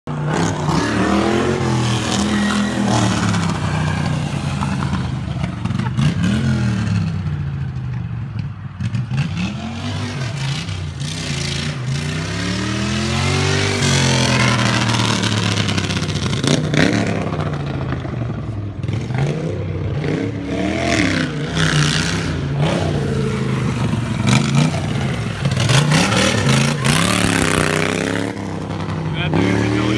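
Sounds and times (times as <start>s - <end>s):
lawn mower engine revving: 8.8s - 29.9s.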